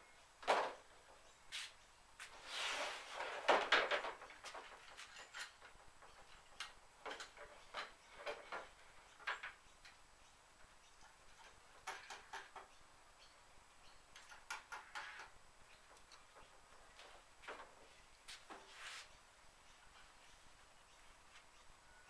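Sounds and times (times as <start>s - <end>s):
rustling swish: 1.6s - 3.2s, 18.6s - 19.2s
wooden parts clicking and knocking: 3.2s - 12.7s, 14.1s - 17.8s.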